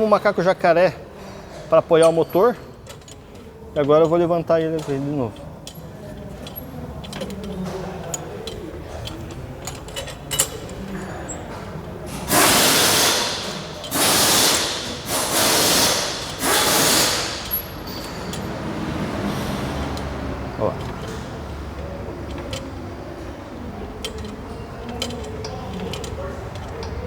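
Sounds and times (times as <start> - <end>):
floor jack hissing bursts: 12.1 - 17.6.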